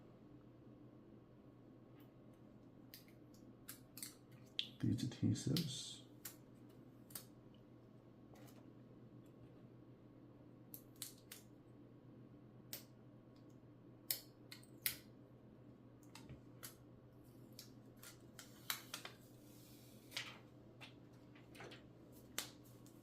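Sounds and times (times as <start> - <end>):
faint low hum: 0.0 - 23.0.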